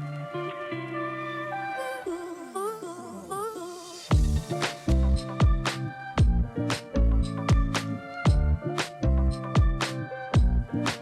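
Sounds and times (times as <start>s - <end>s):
kick drum and snare: 4.1s - 6.5s, 7.2s - 8.9s, 9.6s - 11.0s
bass and synth notes: 4.1s - 11.0s.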